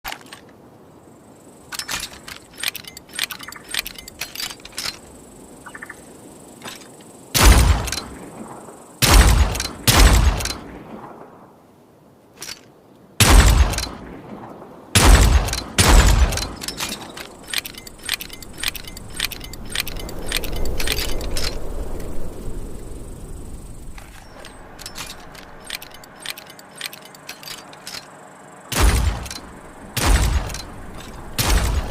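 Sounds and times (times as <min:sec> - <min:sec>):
revolver cocking clicks: 0:01.7 - 0:05.9, 0:07.4 - 0:08.2, 0:09.0 - 0:10.7, 0:12.4 - 0:14.1, 0:15.0 - 0:22.2, 0:23.8 - 0:31.9
gunshots: 0:07.4 - 0:08.2, 0:09.0 - 0:10.8, 0:13.2 - 0:14.2, 0:15.0 - 0:19.2, 0:28.7 - 0:31.9.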